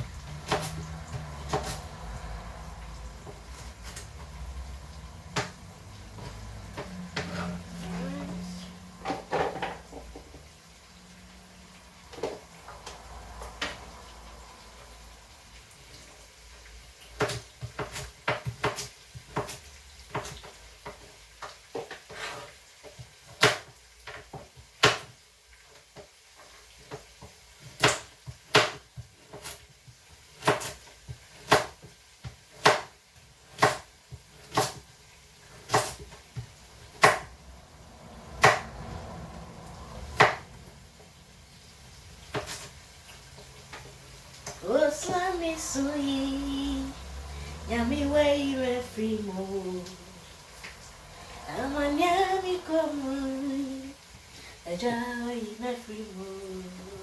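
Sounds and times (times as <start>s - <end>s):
kitchen utensils knocking: 9.0s - 10.5s.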